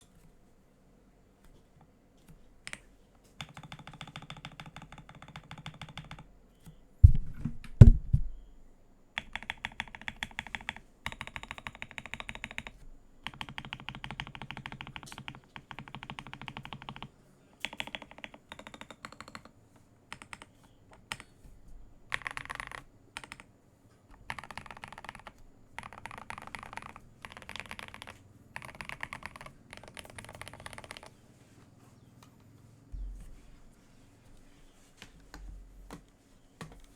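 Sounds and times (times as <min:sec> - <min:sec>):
mechanical keyboard typing: 0:03.4 - 0:06.2, 0:09.2 - 0:19.5, 0:20.1 - 0:21.3, 0:22.1 - 0:23.5, 0:24.1 - 0:31.2.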